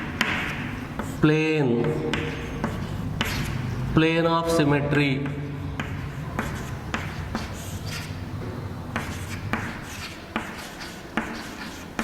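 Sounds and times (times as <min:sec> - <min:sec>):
scratchy writing strokes on board: 0:00.0 - 0:03.9, 0:05.2 - 0:12.0
pen tip tapping board: 0:00.1 - 0:01.2, 0:01.8 - 0:03.6, 0:05.2 - 0:08.1, 0:09.0 - 0:12.0.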